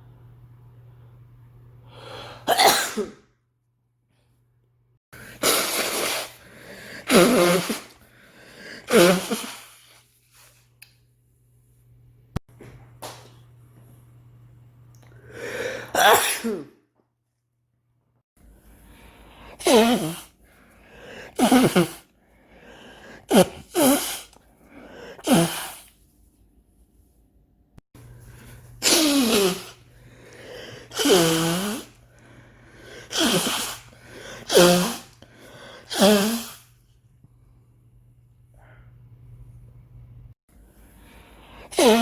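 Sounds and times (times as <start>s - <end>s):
steady low hum: 0.0s - 2.6s, 36.7s - 41.7s
person sneezing: 2.1s - 3.2s, 5.2s - 8.0s, 8.6s - 10.0s, 15.4s - 16.8s, 19.5s - 20.4s, 21.1s - 22.0s, 23.0s - 24.4s, 25.0s - 25.9s, 28.8s - 32.0s, 32.8s - 36.7s, 41.6s - 42.0s.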